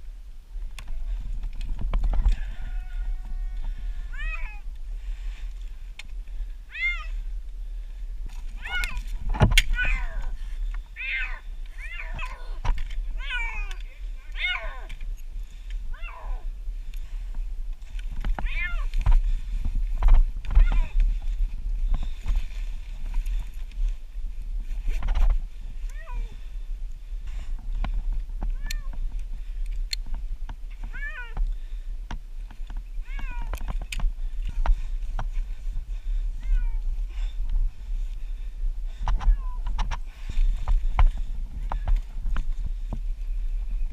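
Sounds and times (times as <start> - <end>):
steady low rumble: 0.0 - 43.9
cat meowing: 2.6 - 4.6, 6.7 - 7.2, 8.6 - 9.0, 9.7 - 10.3, 11.0 - 12.6, 13.2 - 14.9, 18.4 - 18.9, 30.9 - 31.4.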